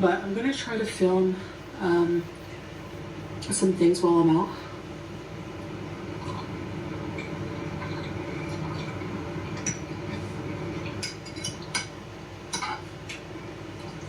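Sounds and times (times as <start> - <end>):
steady low hum: 0.0 - 14.0
cutlery clinking on plate: 11.0 - 11.9, 12.5 - 12.8.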